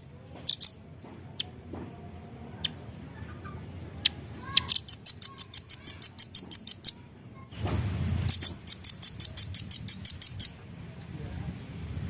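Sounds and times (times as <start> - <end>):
bird calling sharp high notes: 3.4 - 7.0.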